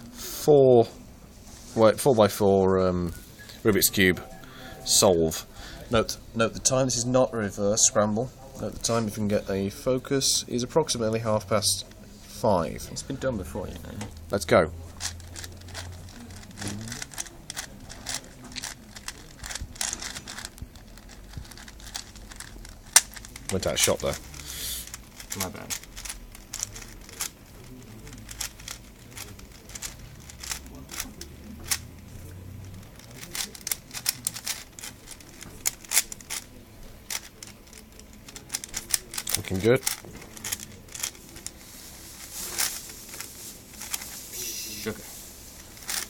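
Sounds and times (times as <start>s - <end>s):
puzzle cube plastic clicks: 15.0s - 41.6s, 42.2s - 44.1s, 45.6s - 46.0s.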